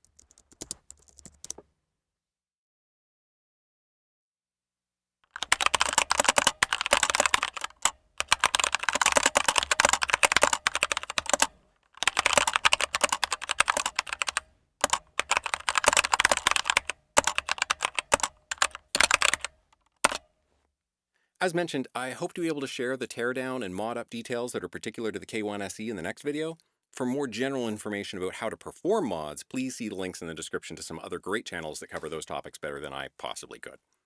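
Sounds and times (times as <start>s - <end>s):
mechanical keyboard typing: 0.0s - 1.6s, 5.3s - 20.2s.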